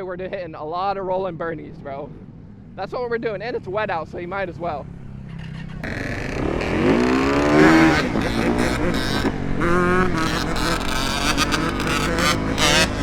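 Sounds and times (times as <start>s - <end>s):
engines running low: 0.0s - 13.0s
dirt bike engines revving: 0.9s - 13.0s.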